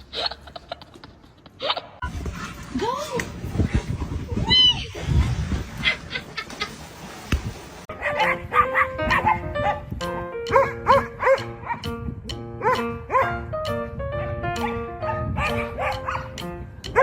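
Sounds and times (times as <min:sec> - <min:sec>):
dog barking: 0:08.0 - 0:09.9, 0:10.5 - 0:11.9, 0:12.6 - 0:13.4, 0:14.6 - 0:17.0
music with steady notes: 0:08.3 - 0:17.0.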